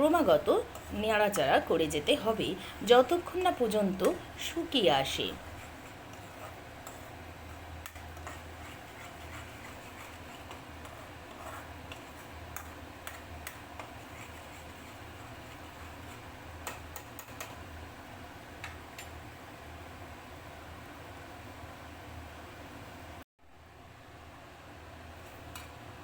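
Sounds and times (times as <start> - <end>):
steady low hum: 0.0 - 26.0
spatula tapping in pan: 11.9 - 14.0.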